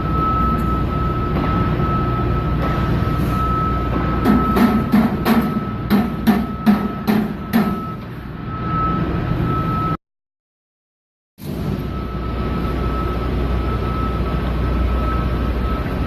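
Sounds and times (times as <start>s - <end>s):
hammer tapping on sheet metal: 4.2s - 7.8s.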